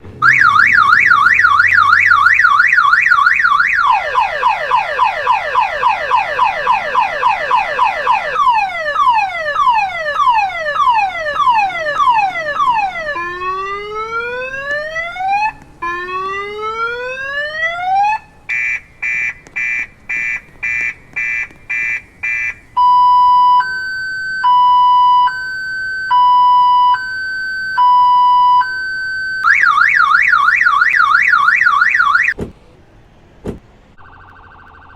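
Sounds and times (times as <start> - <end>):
car alarm siren: 0.2 - 32.4, 34.0 - 34.9.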